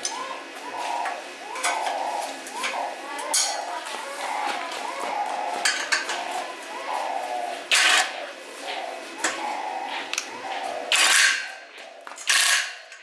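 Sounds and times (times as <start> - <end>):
metal tools clinking: 3.3 - 3.6.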